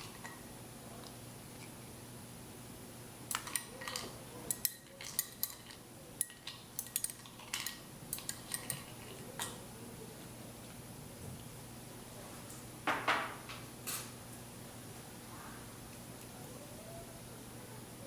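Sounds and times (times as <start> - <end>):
utensils clinking against dish: 3.3 - 9.6.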